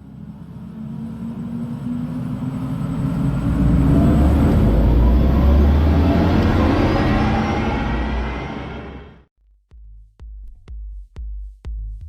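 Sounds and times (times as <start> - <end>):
electric car drive hum: 0.0 - 9.3.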